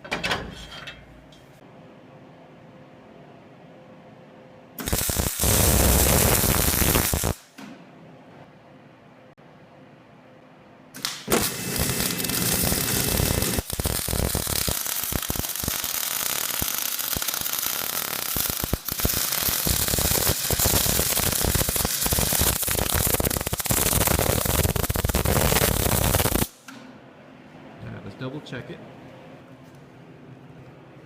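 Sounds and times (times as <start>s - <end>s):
welding arc crackling: 4.8s - 7.4s, 11.0s - 26.6s.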